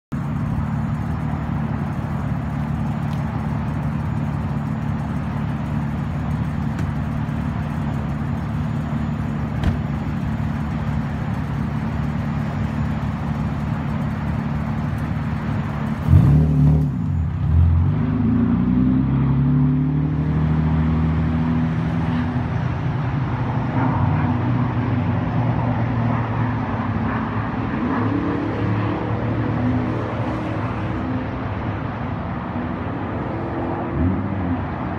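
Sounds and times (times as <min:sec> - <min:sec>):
car engine revving: 0:00.3 - 0:21.4.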